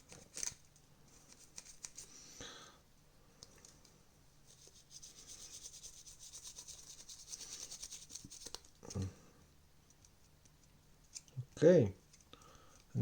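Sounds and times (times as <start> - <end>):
light rubbing strokes: 4.4 - 8.7.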